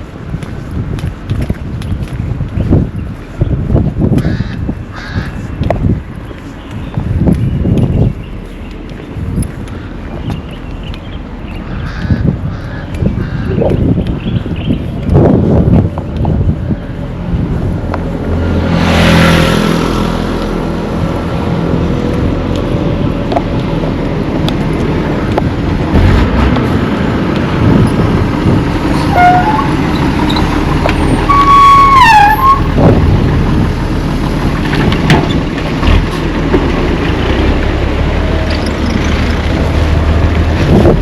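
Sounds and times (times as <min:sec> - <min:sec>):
wind on microphone: 0:00.0 - 0:36.2, 0:38.3 - 0:41.0
road traffic rumble: 0:00.0 - 0:41.0
vehicle passing close by: 0:17.0 - 0:31.6.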